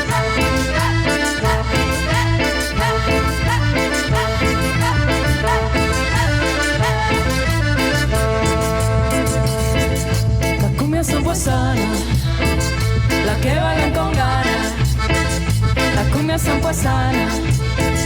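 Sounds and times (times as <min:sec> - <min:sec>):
latin dance band playing: 0:00.0 - 0:18.0.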